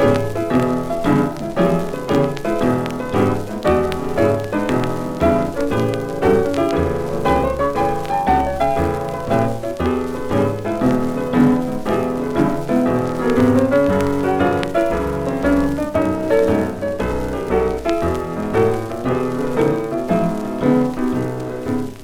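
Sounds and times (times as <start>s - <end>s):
old blues piano record: 0.0s - 22.0s.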